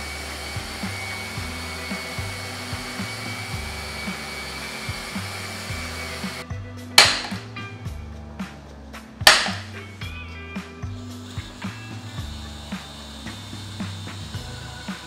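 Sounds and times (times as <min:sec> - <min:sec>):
power tool whirring: 0:00.0 - 0:06.4, 0:11.1 - 0:15.0
background music with low beat: 0:00.0 - 0:15.0.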